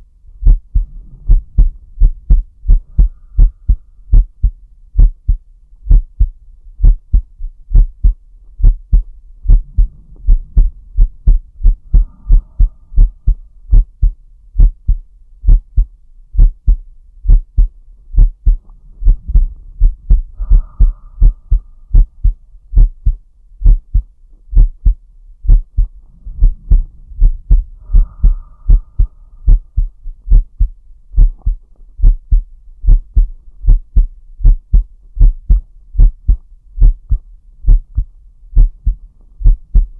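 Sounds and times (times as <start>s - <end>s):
heartbeat thumps: 0.3s - 39.9s
deep breaths: 0.4s - 4.5s, 8.9s - 13.9s, 18.4s - 22.4s, 25.8s - 30.0s.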